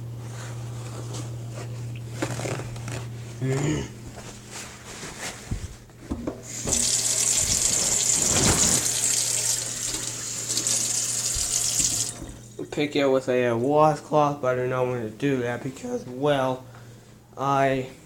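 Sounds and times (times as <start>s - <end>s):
faucet running into sink: 6.5s - 12.6s.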